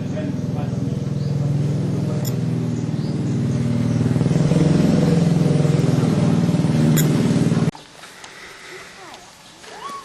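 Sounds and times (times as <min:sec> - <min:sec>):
engine running: 0:00.0 - 0:07.7.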